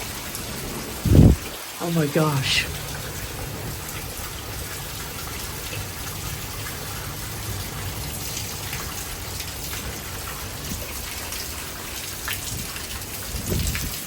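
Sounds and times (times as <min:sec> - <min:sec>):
heavy rain pouring: 0:00.0 - 0:14.0
low thunder rumble: 0:00.4 - 0:01.6.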